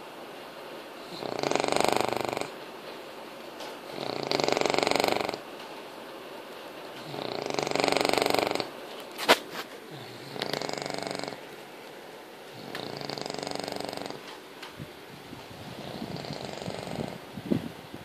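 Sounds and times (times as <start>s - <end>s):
puppy snoring: 1.0s - 2.6s, 3.8s - 5.5s, 7.0s - 8.8s, 9.8s - 11.5s, 12.4s - 14.4s, 15.5s - 17.4s.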